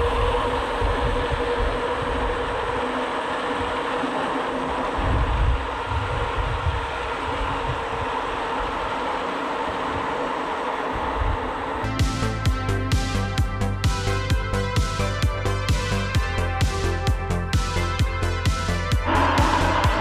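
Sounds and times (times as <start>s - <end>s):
wind buffeting microphone: 0.0s - 12.6s.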